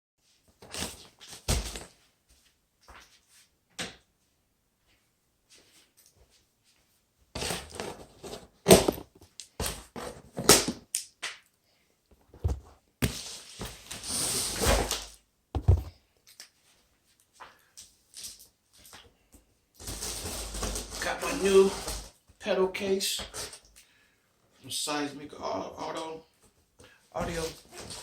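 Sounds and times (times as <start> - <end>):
scraping or rustling: 7.4 - 10.5, 19.8 - 22.2, 27.2 - 28.0
knocks and thunks of case: 8.6 - 9.2, 12.3 - 13.2, 15.6 - 16.0.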